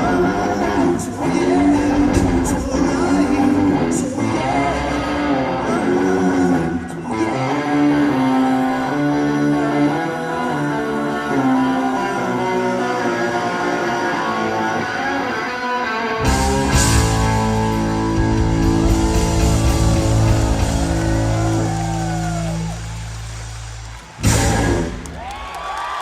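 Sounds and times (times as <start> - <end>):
rock band playing held chord: 0.0 - 25.4.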